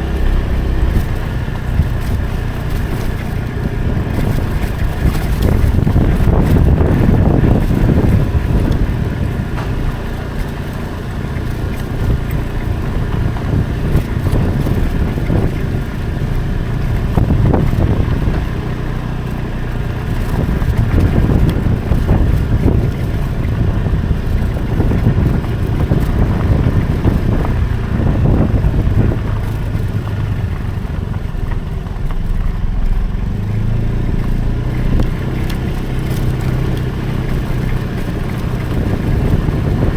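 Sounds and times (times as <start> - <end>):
motorcycle engine running: 0.0 - 39.9
wind on microphone: 0.0 - 39.9.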